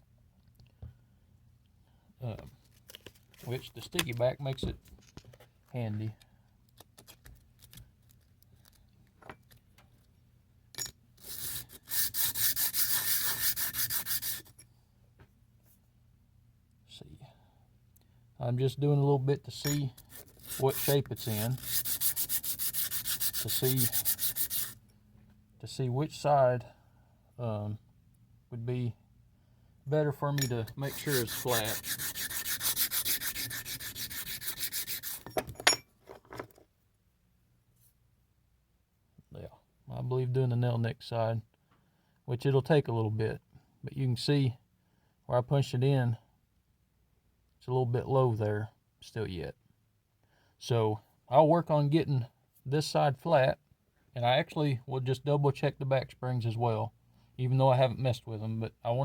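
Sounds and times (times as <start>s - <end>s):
knife blade sanding on sandpaper: 11.2s - 14.6s, 20.0s - 24.8s, 30.5s - 35.3s.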